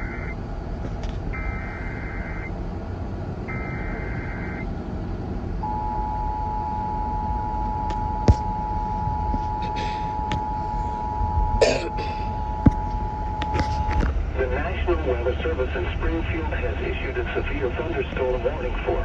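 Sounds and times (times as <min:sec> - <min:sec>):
warbling digital data squeal: 0:00.0 - 0:00.4, 0:01.4 - 0:02.5, 0:03.5 - 0:04.7
steady low rumble: 0:00.0 - 0:19.0.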